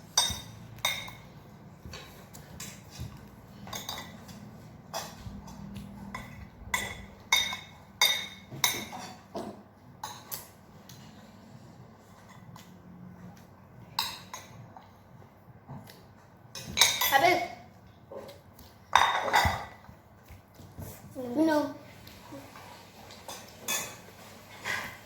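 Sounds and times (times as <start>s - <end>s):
utensils clinking against dishes: 0.0s - 10.6s, 16.5s - 17.6s, 18.9s - 19.9s, 23.1s - 25.0s.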